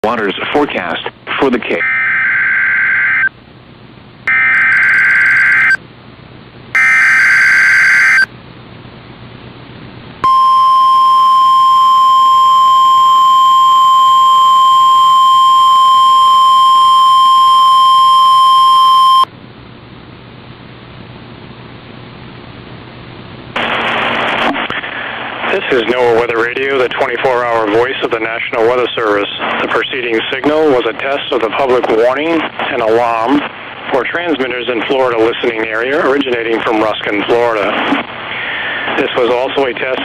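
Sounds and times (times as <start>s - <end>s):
steady warning alarm tone: 4.3s - 5.8s, 6.8s - 8.3s, 10.2s - 19.3s
warbling digital data bursts: 6.8s - 8.3s.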